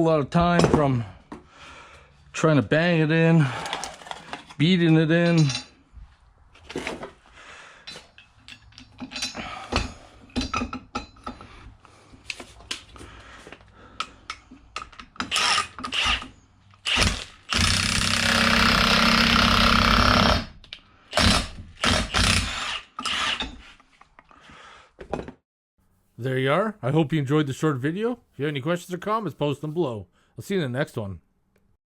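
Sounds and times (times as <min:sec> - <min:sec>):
metal tools clinking: 0:03.6 - 0:05.8, 0:07.8 - 0:11.5.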